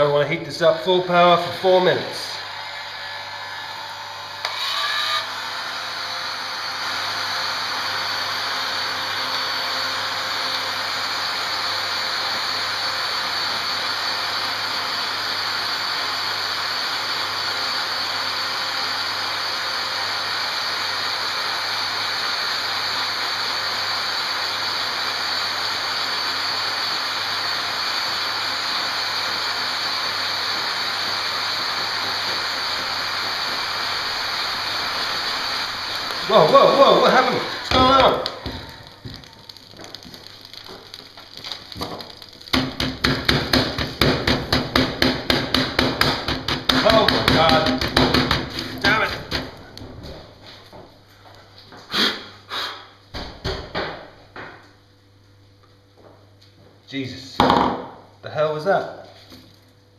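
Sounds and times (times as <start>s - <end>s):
heat gun blowing air: 0.8s - 39.3s, 41.7s - 49.4s, 51.9s - 52.8s.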